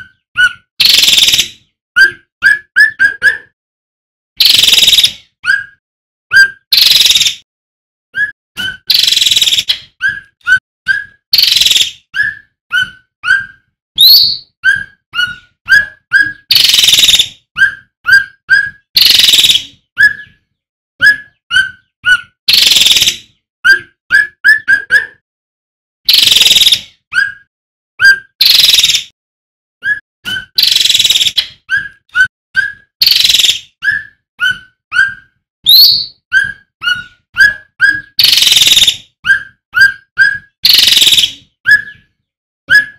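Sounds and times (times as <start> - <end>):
bird harsh song phrases: 4.4 - 7.4, 8.2 - 25.2, 26.1 - 29.1, 29.8 - 42.9
bird whistling rapid notes: 8.2 - 20.4, 29.8 - 42.0.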